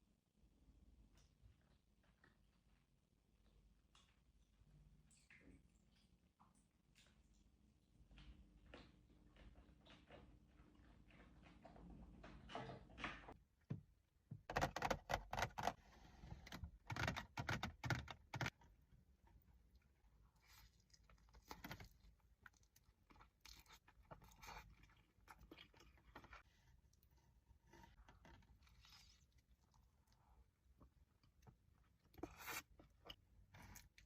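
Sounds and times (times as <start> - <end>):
wet crackly chewing: 3.4 - 12.0, 18.4 - 34.0.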